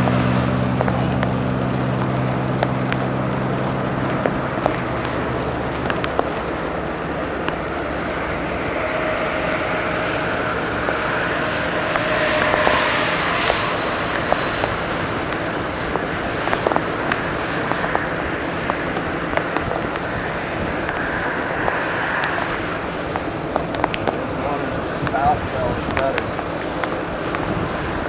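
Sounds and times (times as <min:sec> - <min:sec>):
vehicle and wind rushing: 0:00.0 - 0:28.0
sharp ticks and taps: 0:02.0 - 0:03.0, 0:05.8 - 0:06.3.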